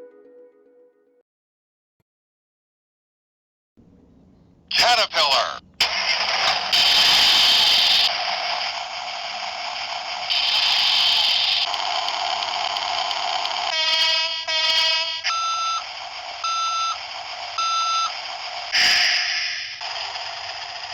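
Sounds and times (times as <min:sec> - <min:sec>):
machine engine running: 0:05.8 - 0:20.9
backing-up beeps: 0:15.3 - 0:17.0, 0:17.6 - 0:18.2.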